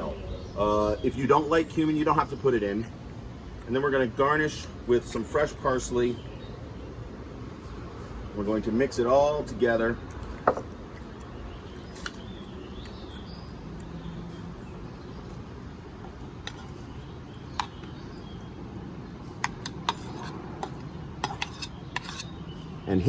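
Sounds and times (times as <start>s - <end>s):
background hum: 0.0s - 23.0s.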